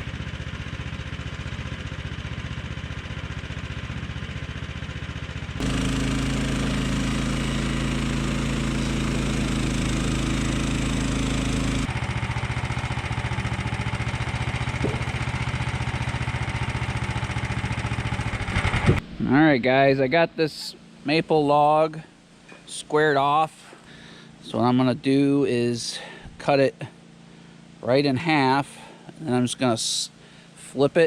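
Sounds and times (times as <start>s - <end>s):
small gas engine running: 0.0s - 19.1s.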